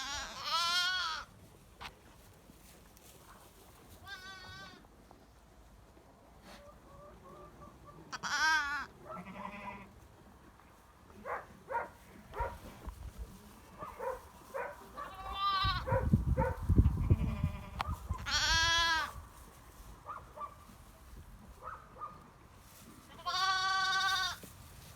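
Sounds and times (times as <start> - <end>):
goats bleating: 0.0 - 1.3, 4.0 - 4.8, 8.1 - 9.9, 15.0 - 15.9, 17.0 - 19.1, 23.1 - 24.4.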